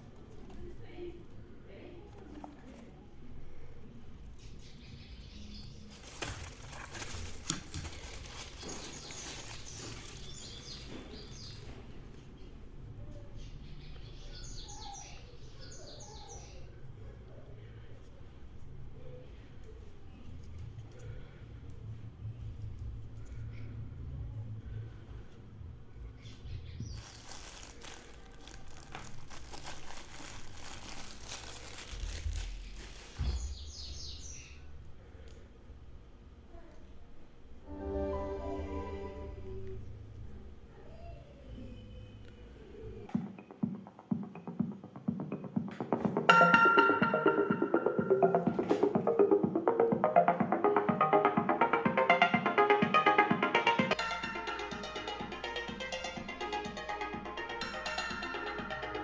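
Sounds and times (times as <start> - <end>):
packaging rustling and scraping: 5.8 - 11.6, 26.9 - 33.6.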